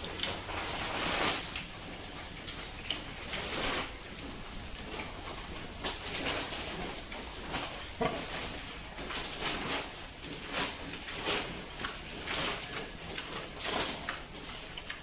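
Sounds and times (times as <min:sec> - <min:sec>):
pigs snuffling: 0:00.0 - 0:15.0.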